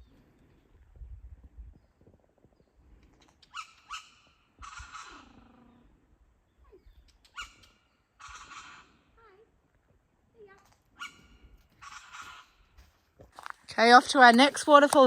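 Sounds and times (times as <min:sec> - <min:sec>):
bird calling: 0:06.7 - 0:09.0, 0:11.0 - 0:12.6.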